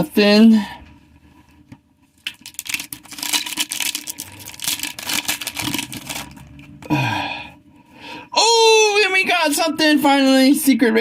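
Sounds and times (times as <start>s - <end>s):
foil wrapper crinkling: 2.2s - 6.5s.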